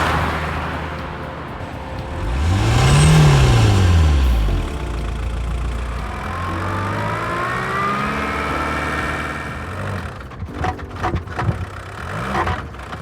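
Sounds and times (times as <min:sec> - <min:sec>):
whine rising in pitch: 0:00.0 - 0:09.7
diesel engine running: 0:00.0 - 0:13.0.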